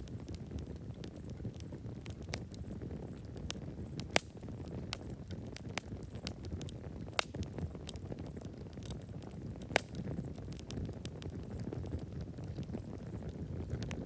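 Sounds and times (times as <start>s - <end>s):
campfire crackling: 0.0s - 14.0s.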